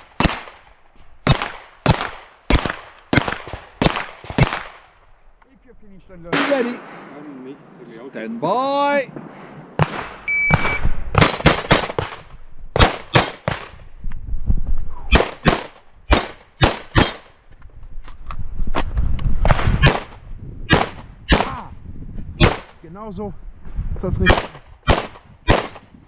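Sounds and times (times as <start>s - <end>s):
shotgun shots: 0.0s - 4.9s, 9.8s - 13.8s, 15.1s - 17.3s, 19.5s - 21.7s, 22.4s - 22.8s, 24.2s - 25.9s.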